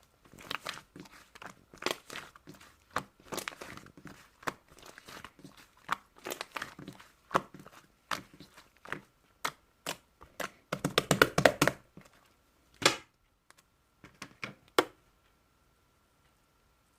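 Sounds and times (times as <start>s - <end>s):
slime squishing: 0.0s - 12.3s.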